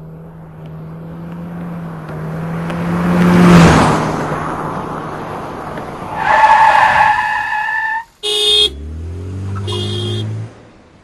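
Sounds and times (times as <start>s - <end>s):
car engine revving: 0.0s - 6.0s, 8.2s - 10.9s
tires squealing in a skid: 6.0s - 8.1s
car horn honks: 8.2s - 8.9s, 9.6s - 10.4s.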